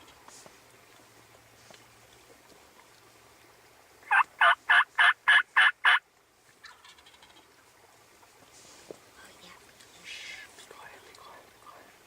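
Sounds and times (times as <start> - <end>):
turkey yelping: 4.1 - 6.0.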